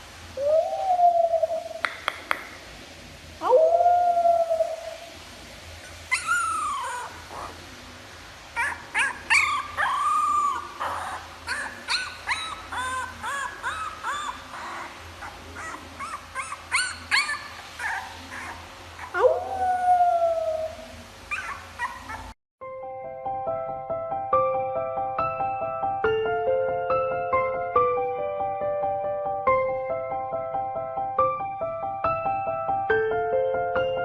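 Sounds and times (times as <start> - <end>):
dog howling: 3.4 - 5.1, 6.1 - 7.6, 8.6 - 22.4
dog yipping and whining: 5.8 - 7.6, 8.6 - 22.4.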